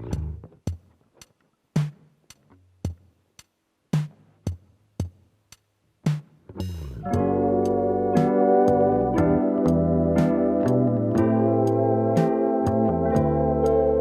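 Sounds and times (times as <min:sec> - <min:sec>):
low bass notes: 0:00.0 - 0:00.5, 0:06.6 - 0:14.0
slow drum machine beat: 0:00.0 - 0:14.0.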